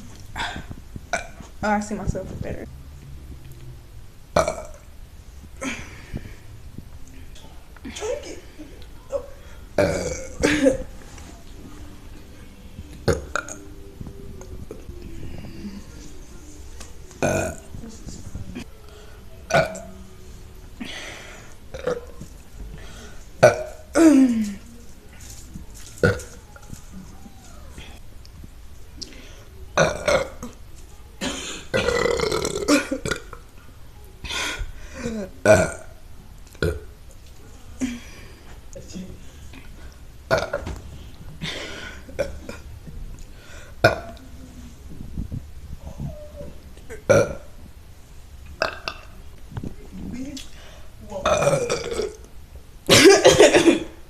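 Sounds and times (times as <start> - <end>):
woman burping: 0.3 - 1.5, 4.4 - 4.9, 7.8 - 11.0, 13.1 - 13.6, 17.2 - 17.7, 19.5 - 20.0, 20.8 - 22.1, 23.4 - 24.7, 29.8 - 30.6, 31.2 - 33.4, 34.3 - 35.9, 40.3 - 40.7, 41.4 - 42.7, 43.8 - 44.2, 46.9 - 47.5, 48.6 - 49.1, 51.2 - 52.3, 52.9 - 53.9.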